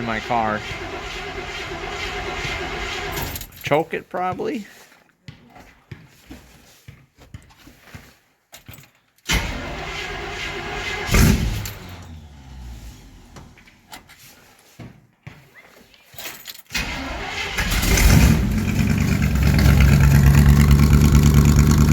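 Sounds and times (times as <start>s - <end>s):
engine cranking and starting: 0.0s - 3.8s, 9.3s - 14.2s, 16.6s - 21.9s.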